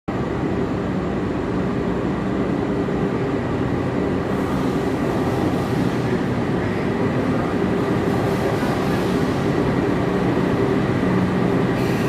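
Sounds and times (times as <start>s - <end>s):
diesel train rumbling: 0.1s - 12.0s
train wheels hissing: 4.2s - 12.0s.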